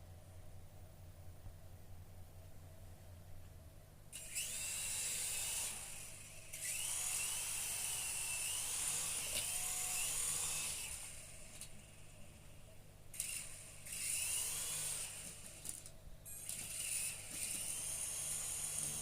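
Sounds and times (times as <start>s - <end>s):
toy helicopter motor whining: 4.2s - 12.4s, 13.1s - 19.0s.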